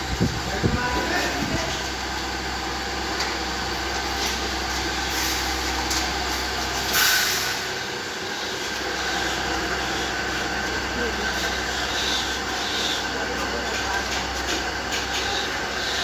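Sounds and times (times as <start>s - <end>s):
machinery hum: 0.0s - 16.0s
short loud hiss: 6.9s - 7.7s.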